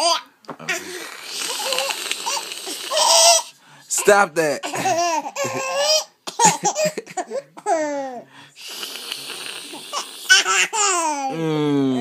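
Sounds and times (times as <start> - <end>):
baby laughing: 1.5 - 8.2, 10.3 - 11.4.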